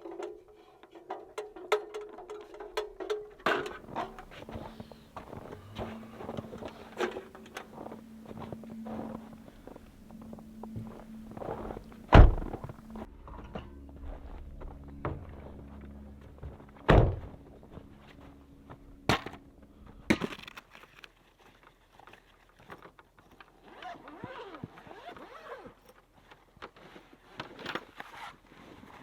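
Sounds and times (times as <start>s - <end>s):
steady low hum: 3.5s - 20.2s.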